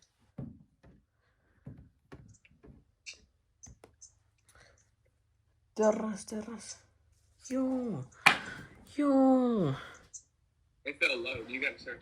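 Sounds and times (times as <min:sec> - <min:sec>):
quiet scattered clicks and taps: 0:00.0 - 0:05.2.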